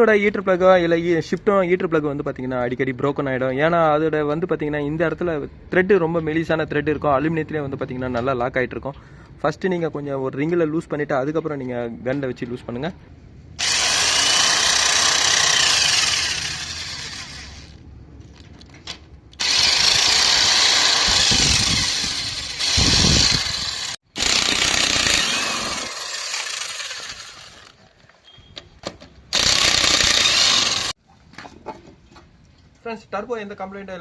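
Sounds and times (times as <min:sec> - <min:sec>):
pneumatic impact wrench: 0:13.6 - 0:17.8, 0:19.4 - 0:27.8, 0:29.3 - 0:30.9.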